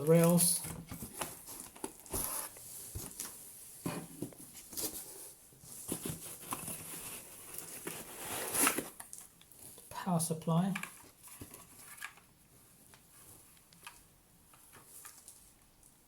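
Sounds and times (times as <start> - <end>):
cardboard and plastic rustling: 0.0 - 9.9, 10.7 - 16.0.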